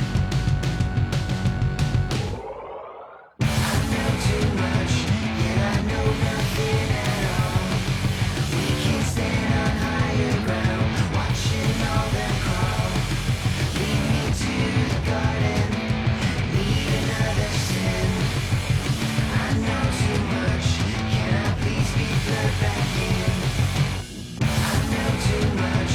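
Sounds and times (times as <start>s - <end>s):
distorted guitar: 0.0s - 2.4s, 3.4s - 25.9s
loud punk rock music: 0.0s - 2.4s, 3.4s - 25.9s
drums: 0.0s - 2.7s, 3.4s - 25.9s
person singing: 3.4s - 13.2s, 16.5s - 18.5s.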